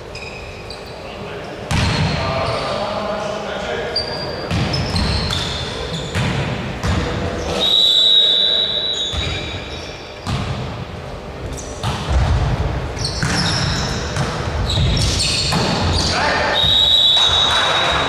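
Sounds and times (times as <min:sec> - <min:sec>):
sneakers squeaking: 0:00.0 - 0:03.0, 0:03.6 - 0:18.0
players' voices: 0:00.8 - 0:09.5, 0:12.8 - 0:18.0
basketball bouncing on court: 0:01.7 - 0:02.2, 0:04.5 - 0:07.2, 0:10.2 - 0:10.8, 0:11.8 - 0:18.0
high whistle: 0:07.5 - 0:09.5, 0:16.5 - 0:18.0.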